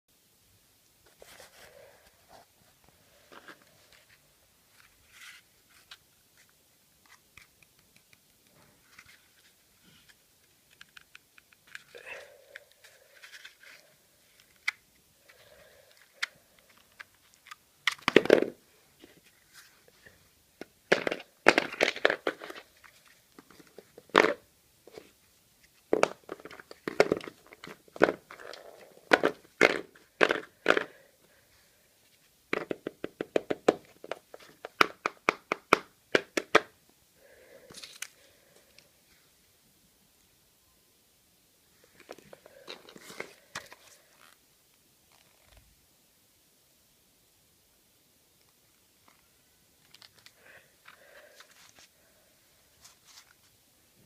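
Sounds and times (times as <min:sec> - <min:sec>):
paper crinkling and creasing: 0:08.5 - 0:18.2, 0:52.7 - 0:53.6.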